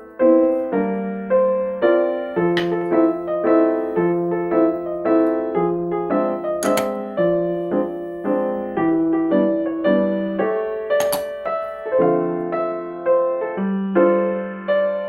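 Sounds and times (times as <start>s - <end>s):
piano music: 0.0s - 15.0s
sharp clicks: 6.6s - 7.0s, 11.0s - 11.4s.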